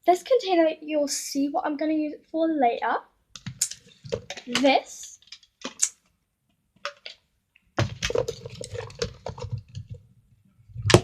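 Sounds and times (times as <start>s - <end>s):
plastic containers knocking together: 3.4s - 5.8s, 6.8s - 7.2s, 7.8s - 10.0s, 10.8s - 11.0s
plastic rustling: 3.5s - 5.8s, 7.8s - 10.0s.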